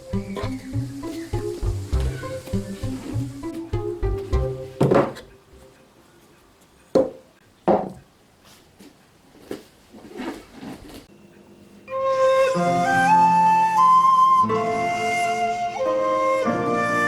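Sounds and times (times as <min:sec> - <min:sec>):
tableware knocking on table: 0:04.8 - 0:05.3
rustling: 0:08.4 - 0:11.1.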